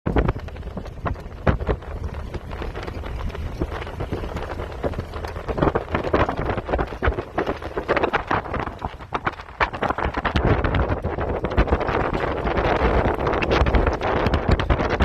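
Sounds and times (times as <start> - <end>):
wind buffeting microphone: 0.1 - 15.0.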